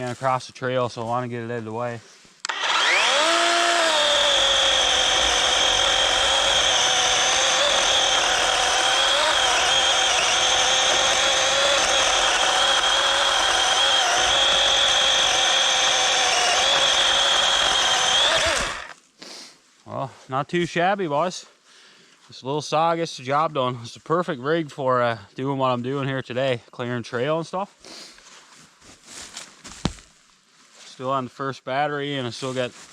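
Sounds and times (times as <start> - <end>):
electric chainsaw cutting wood: 2.5 - 19.0.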